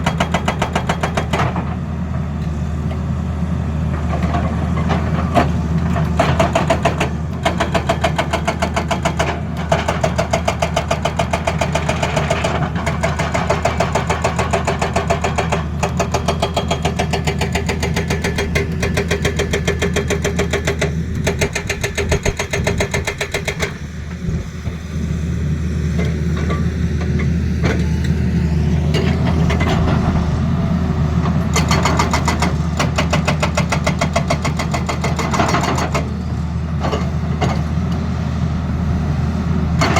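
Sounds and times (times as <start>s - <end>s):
diesel engine knocking: 5.3s - 23.9s.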